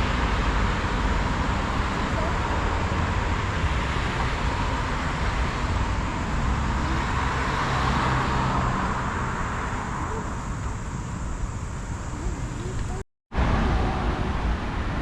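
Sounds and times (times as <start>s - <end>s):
cars going by: 0.0s - 15.0s
vehicle passing close: 0.0s - 15.0s.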